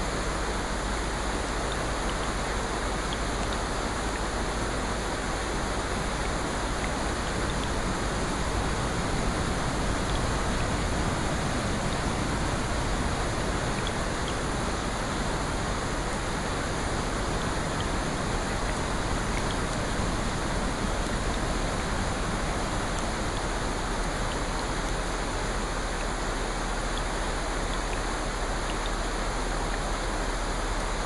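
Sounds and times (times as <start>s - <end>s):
rushing water: 0.0s - 31.0s
faint ticks: 3.0s - 4.3s, 26.9s - 30.2s.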